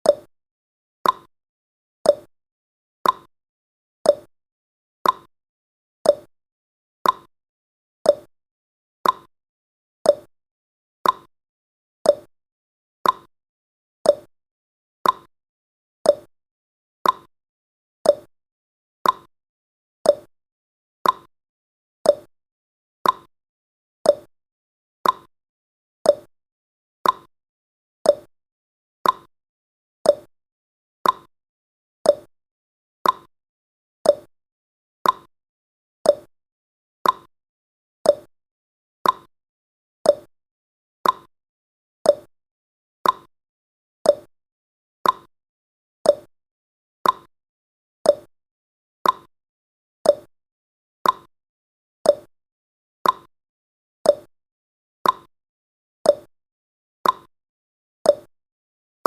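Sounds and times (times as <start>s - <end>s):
clock ticking: 39.0s - 39.3s, 41.0s - 41.3s, 47.0s - 47.3s.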